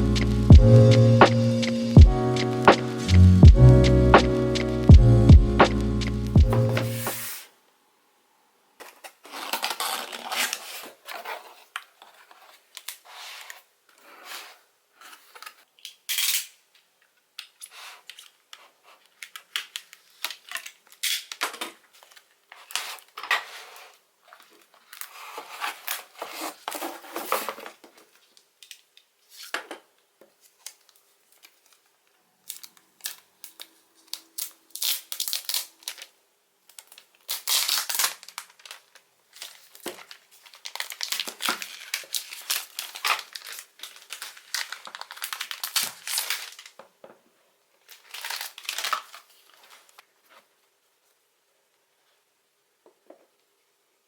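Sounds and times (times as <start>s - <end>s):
paper and card tearing: 6.6s - 7.4s, 8.9s - 13.6s, 25.0s - 27.7s, 36.8s - 38.8s
handling packaging: 8.8s - 15.6s, 17.8s - 29.5s, 30.3s - 47.0s, 47.8s - 50.5s.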